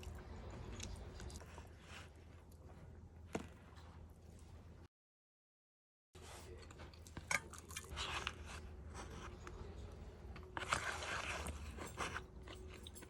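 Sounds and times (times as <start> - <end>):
crunchy bites and chewing: 6.6 - 9.2
scraping noises: 10.4 - 13.0.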